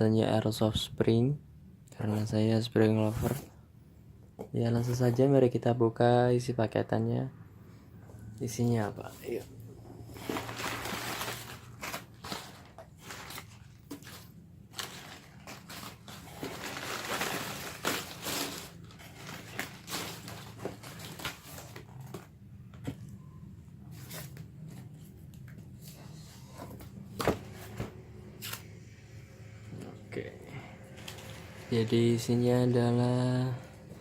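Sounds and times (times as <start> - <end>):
wrapping rustling and tearing: 10.1 - 22.3.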